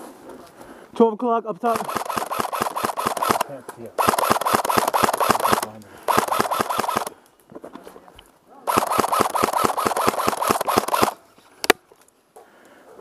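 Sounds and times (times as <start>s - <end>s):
airsoft rifle firing full auto: 1.6s - 7.1s, 8.7s - 11.2s.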